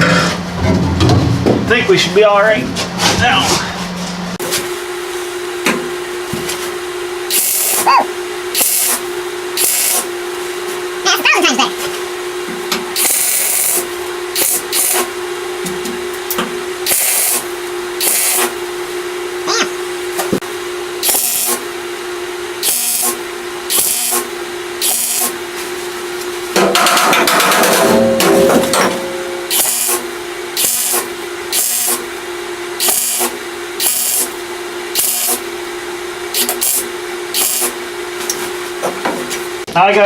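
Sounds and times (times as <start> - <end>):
welder hum: 4.4 - 39.7
welding arc crackling: 7.3 - 7.9, 8.5 - 10.1, 13.0 - 15.1, 16.8 - 18.6, 21.0 - 21.6, 22.6 - 25.4, 29.5 - 32.1, 32.8 - 35.4, 36.3 - 37.8.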